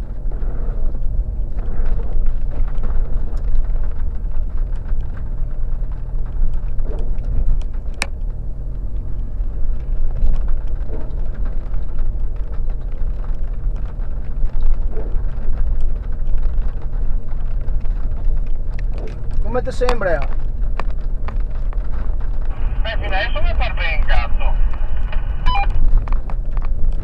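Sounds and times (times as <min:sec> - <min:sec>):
off-road engine running at low revs: 0:00.0 - 0:27.0
clicks and knocks from stones: 0:01.6 - 0:22.6, 0:25.8 - 0:27.0.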